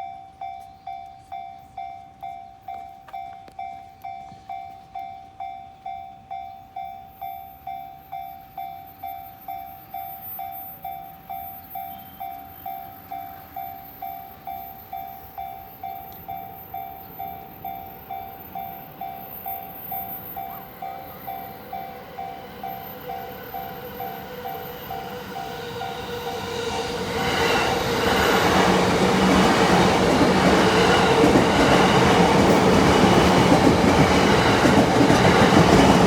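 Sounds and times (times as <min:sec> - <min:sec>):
train rumble: 0:10.8 - 0:36.0.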